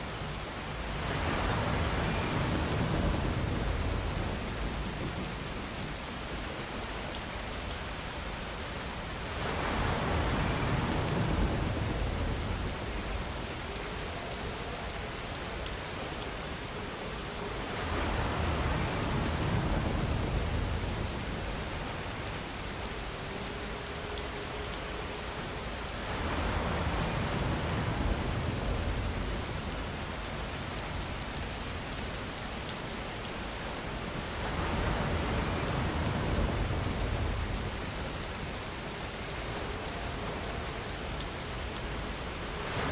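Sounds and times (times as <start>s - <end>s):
steady rain falling: 0.0s - 42.9s.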